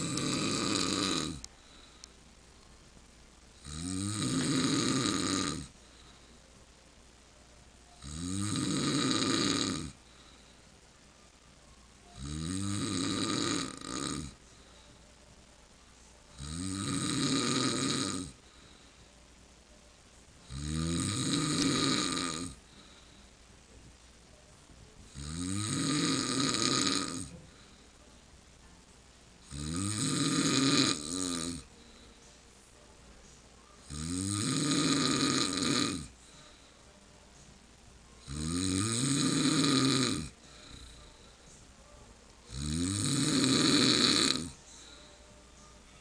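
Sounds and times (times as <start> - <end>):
man snoring: 0.0 - 1.5, 3.6 - 5.7, 8.0 - 10.0, 12.2 - 14.4, 16.3 - 18.4, 20.4 - 22.8, 25.1 - 27.3, 29.5 - 31.7, 33.9 - 36.2, 38.2 - 41.0, 42.5 - 44.6
quiet breathing: 0.0 - 8.2, 8.9 - 12.2, 12.8 - 30.3, 30.9 - 46.0.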